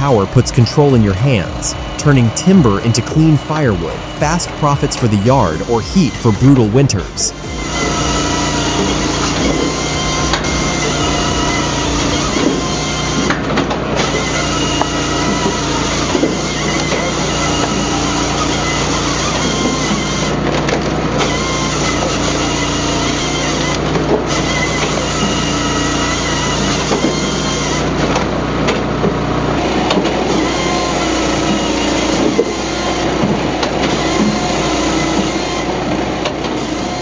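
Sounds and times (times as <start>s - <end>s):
petrol engine running steadily: 0.0s - 20.5s.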